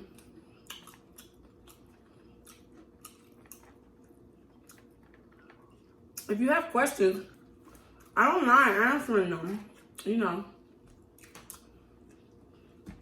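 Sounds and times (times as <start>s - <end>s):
faint wet chewing: 0.0s - 6.3s, 10.8s - 13.0s.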